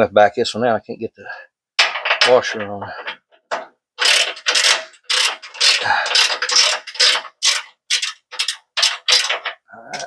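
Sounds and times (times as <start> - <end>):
ratchet wrench clicking: 4.0 - 9.6.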